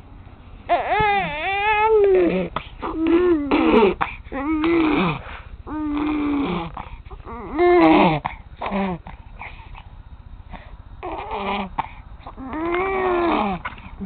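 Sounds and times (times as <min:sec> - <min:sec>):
baby making vocal sounds: 0:00.7 - 0:09.1, 0:11.0 - 0:13.9.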